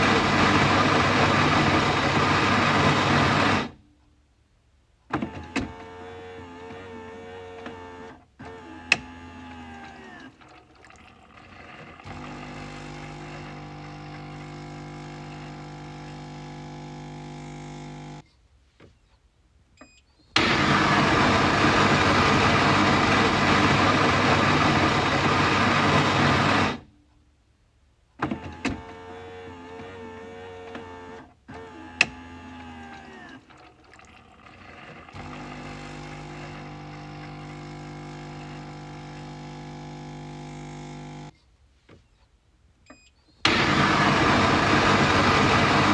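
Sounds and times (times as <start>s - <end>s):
coffee machine noisy rush: 0.0s - 3.8s, 20.4s - 26.8s, 43.5s - 45.9s
coffee machine pump hum: 0.0s - 3.8s, 10.4s - 18.2s, 20.4s - 26.8s, 33.6s - 41.3s, 43.5s - 45.9s.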